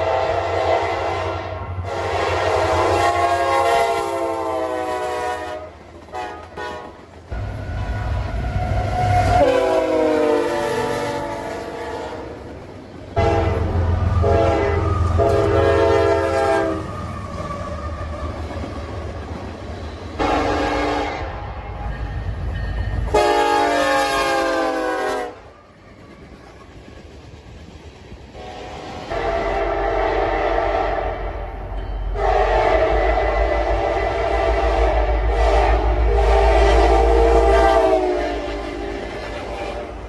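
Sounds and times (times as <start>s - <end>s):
locomotive air horn blasts: 0.0s - 7.0s, 8.5s - 12.4s, 13.2s - 17.0s, 20.2s - 21.8s, 23.1s - 25.5s, 28.4s - 31.5s, 32.1s - 40.0s
locomotive engine rumble: 12.3s - 23.6s, 24.8s - 40.0s.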